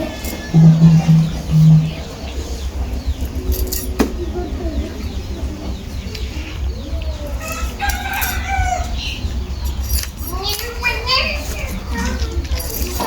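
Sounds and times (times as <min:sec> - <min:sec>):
low rumble: 0:00.0 - 0:07.4
birds chirping: 0:00.0 - 0:13.0.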